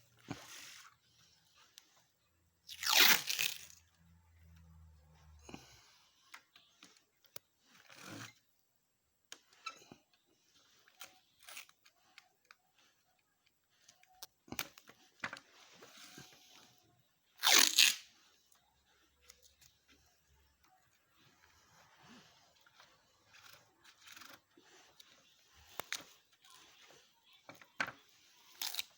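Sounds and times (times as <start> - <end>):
loud tearing rasping noise: 2.7 - 3.8, 17.4 - 18.1, 28.5 - 28.9.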